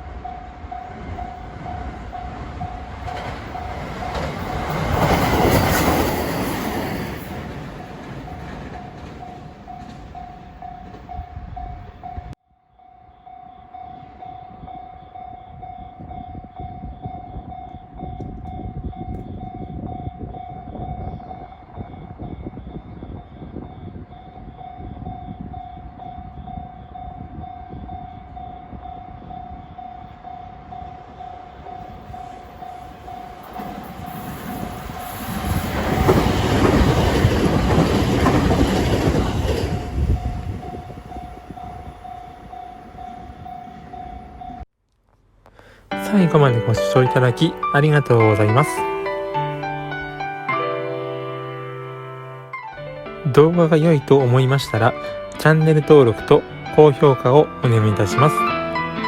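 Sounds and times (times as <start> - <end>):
train rumble: 0.0 - 12.4, 15.4 - 44.6
level-crossing warning bell: 0.0 - 44.7, 45.9 - 50.8.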